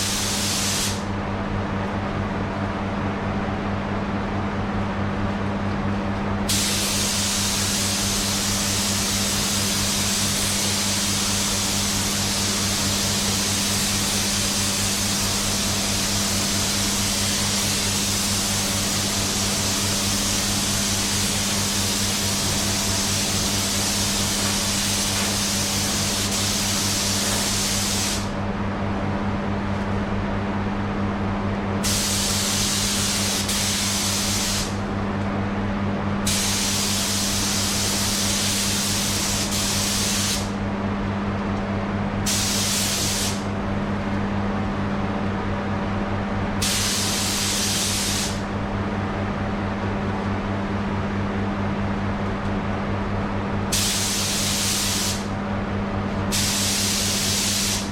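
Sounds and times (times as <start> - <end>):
paint spray gun hissing: 0.0 - 1.0, 6.5 - 28.3, 31.9 - 34.8, 36.3 - 40.5, 42.3 - 43.4, 46.6 - 48.4, 53.7 - 55.3, 56.3 - 57.9
steady low hum: 0.0 - 57.9.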